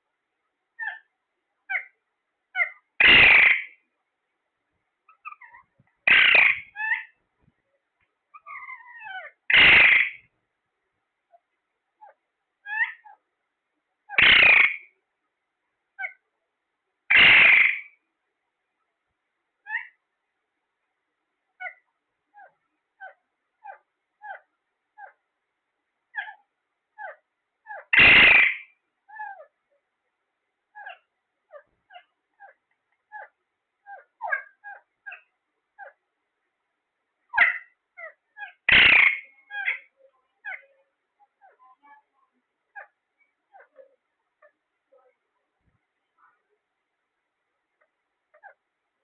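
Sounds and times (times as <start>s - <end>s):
parrot screeching: 0.8s - 1.1s, 2.5s - 3.7s, 5.2s - 7.1s, 8.4s - 10.2s, 12.0s - 13.2s, 14.1s - 14.8s, 17.1s - 17.9s, 19.7s - 20.0s, 27.0s - 29.5s, 30.8s - 35.2s, 37.3s - 40.6s
parrot giving short clipped calls: 6.1s - 6.6s, 9.5s - 10.2s, 17.1s - 17.8s, 38.7s - 39.2s.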